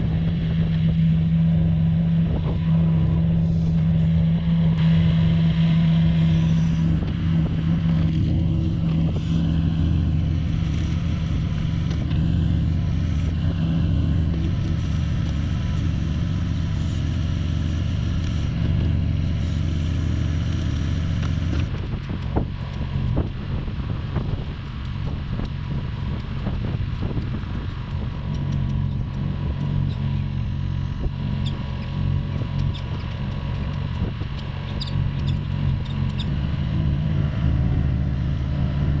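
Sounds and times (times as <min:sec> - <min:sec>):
small machine engine running: 0:01.0 - 0:21.7.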